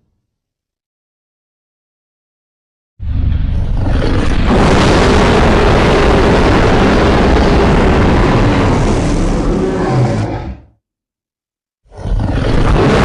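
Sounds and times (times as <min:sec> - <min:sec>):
deep rumbling creature roar: 0:03.1 - 0:10.8, 0:11.9 - 0:13.0.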